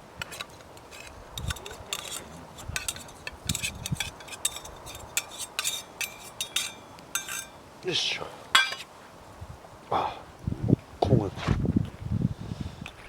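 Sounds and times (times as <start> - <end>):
metal cookware clinking: 0.2 - 7.6, 8.6 - 8.9.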